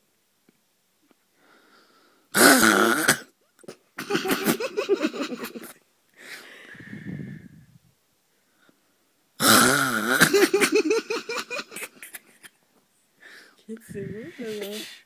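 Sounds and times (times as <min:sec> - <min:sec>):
loud snoring: 0:09.4 - 0:10.4.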